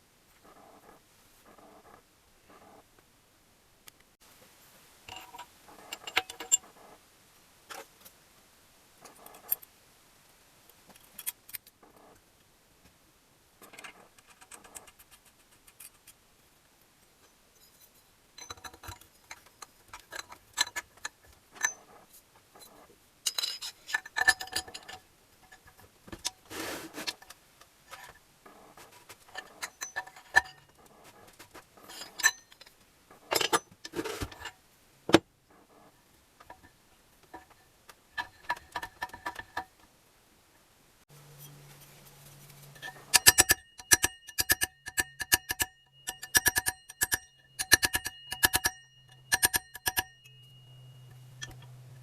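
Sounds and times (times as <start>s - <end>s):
metal parts and tools clinking: 5.1s - 6.9s, 17.2s - 26.4s, 27.9s - 34.6s, 37.3s - 39.7s, 42.5s - 51.8s.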